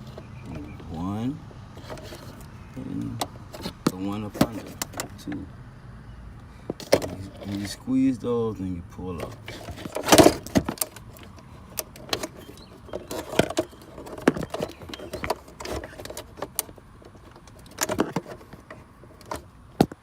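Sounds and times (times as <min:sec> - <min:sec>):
plastic clicks and rattles: 0:01.7 - 0:05.4, 0:09.2 - 0:20.0.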